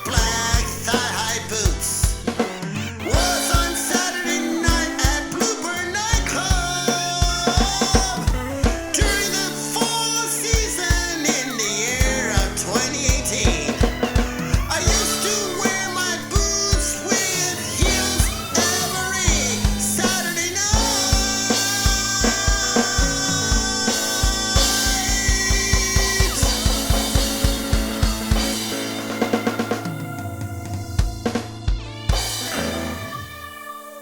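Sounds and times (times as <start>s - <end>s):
person singing melody: 0.0s - 34.0s
pop song: 0.0s - 34.0s
kick drum beat: 20.8s - 28.9s.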